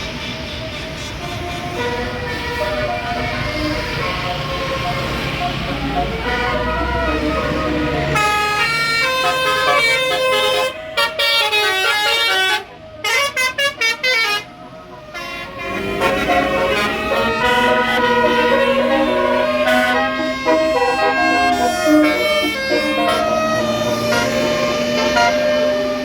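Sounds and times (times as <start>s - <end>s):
air horn playing a tune: 6.0s - 26.0s.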